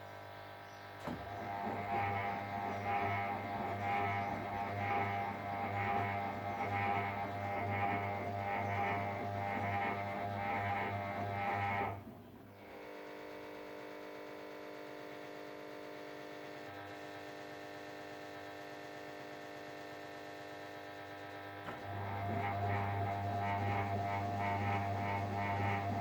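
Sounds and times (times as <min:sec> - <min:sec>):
steady electrical hum: 0:00.0 - 0:14.0, 0:21.0 - 0:26.0
washing machine motor drone: 0:00.5 - 0:26.0.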